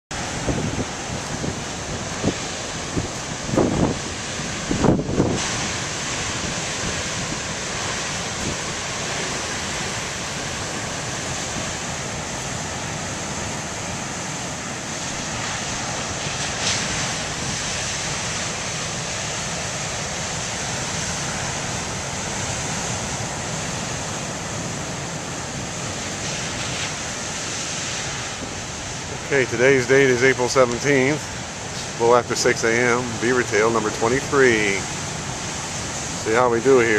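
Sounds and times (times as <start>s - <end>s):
wind noise on microphone: 0.1s - 12.2s, 13.4s - 19.1s, 20.9s - 30.2s
ocean waves breaking: 0.1s - 36.9s.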